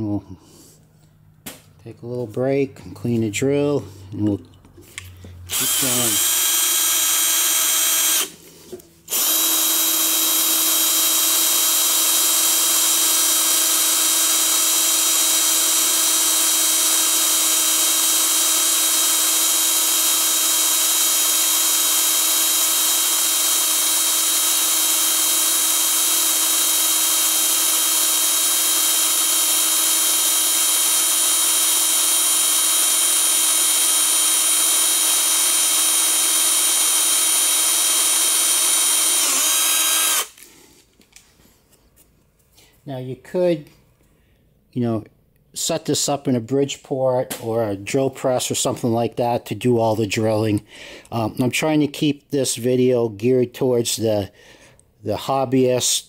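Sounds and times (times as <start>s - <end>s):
electric drill running: 5.5s - 8.4s, 9.1s - 40.4s.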